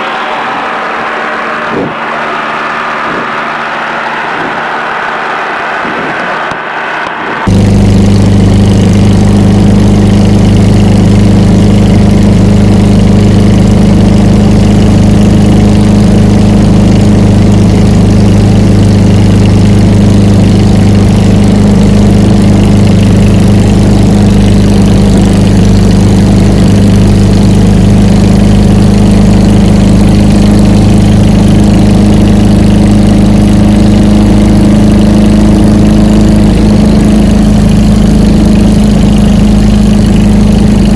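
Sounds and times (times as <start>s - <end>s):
ultralight aircraft engine drone: 0.0s - 40.9s.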